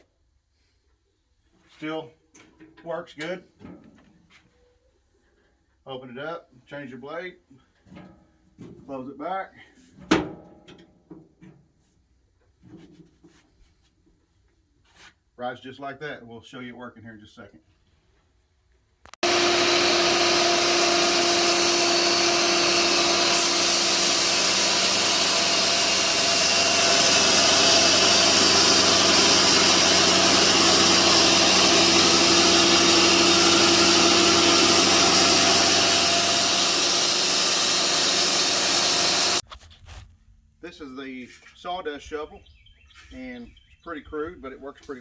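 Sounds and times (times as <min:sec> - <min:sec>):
band sawmill sawing log: 0:19.2 - 0:39.4.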